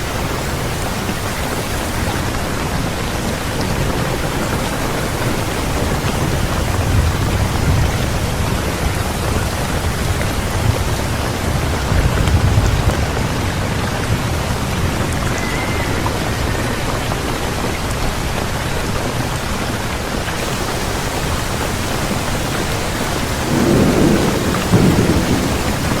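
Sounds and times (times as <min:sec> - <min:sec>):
heavy rain: 0:00.0 - 0:26.0
thunder rumbling: 0:03.0 - 0:16.3, 0:20.4 - 0:26.0.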